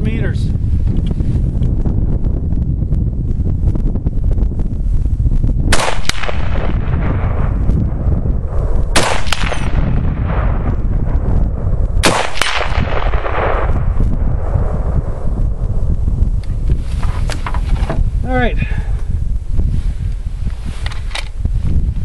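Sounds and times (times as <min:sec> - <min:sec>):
wind buffeting microphone: 0:00.0 - 0:22.0
rifle shots with echo: 0:05.7 - 0:07.7, 0:08.9 - 0:11.2, 0:12.0 - 0:14.0.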